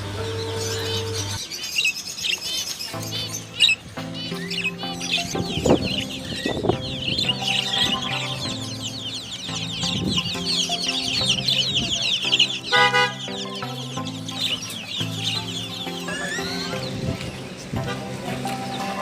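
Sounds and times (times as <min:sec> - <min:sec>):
small birds chirping: 0:00.0 - 0:19.0
chickens: 0:00.1 - 0:19.0
loud chicken call: 0:12.6 - 0:13.6, 0:15.9 - 0:17.0.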